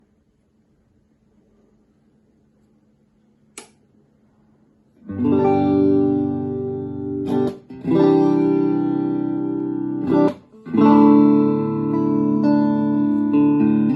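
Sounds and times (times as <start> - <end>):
amplifier hum: 0.0 - 13.9
amplifier click: 3.5 - 3.9
strummed guitar chord: 5.0 - 13.9.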